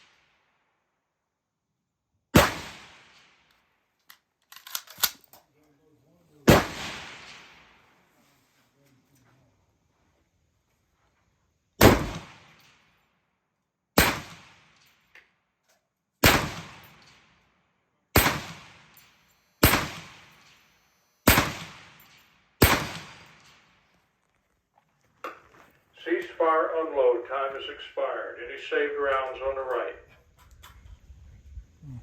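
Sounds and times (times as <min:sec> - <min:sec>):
rifle shots: 0:02.3 - 0:03.5, 0:06.4 - 0:08.0, 0:11.8 - 0:12.9, 0:14.0 - 0:14.9, 0:16.2 - 0:17.4, 0:18.1 - 0:23.9.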